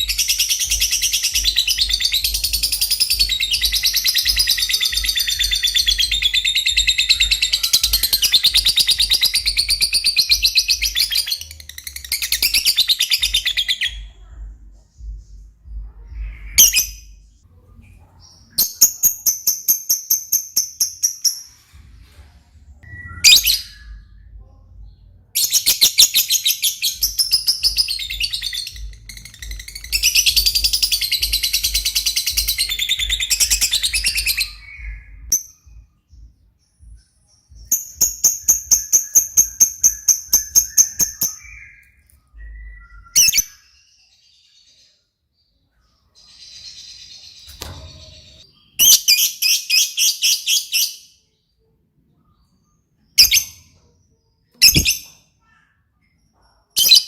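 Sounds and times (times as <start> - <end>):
lovebird chirping and trilling: 0.0 - 14.4, 15.0 - 17.2, 22.8 - 24.4, 25.4 - 35.9, 36.8 - 44.1, 46.2 - 51.2, 52.4 - 53.8, 54.5 - 55.4, 56.7 - 57.0.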